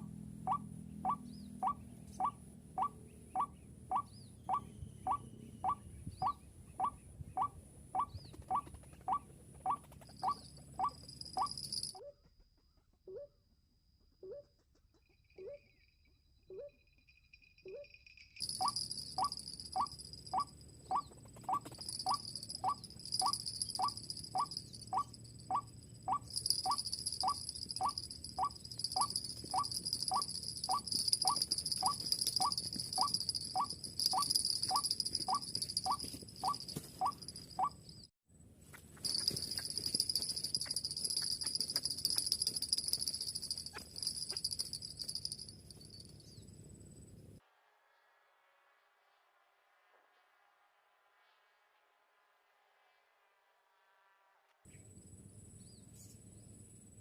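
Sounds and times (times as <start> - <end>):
high-pitched insects buzzing: 18.4 - 20.6, 21.6 - 37.7, 39.0 - 46.1.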